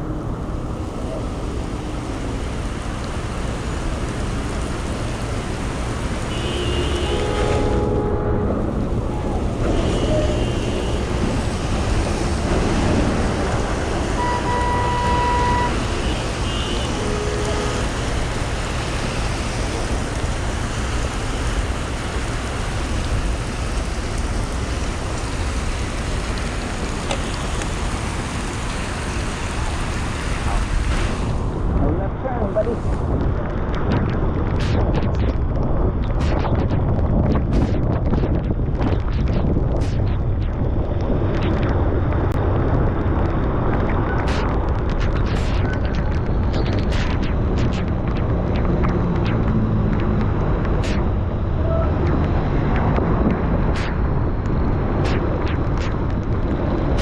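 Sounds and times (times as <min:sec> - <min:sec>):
wet road noise: 0:00.0 - 0:57.0
wind on microphone: 0:30.4 - 0:57.0.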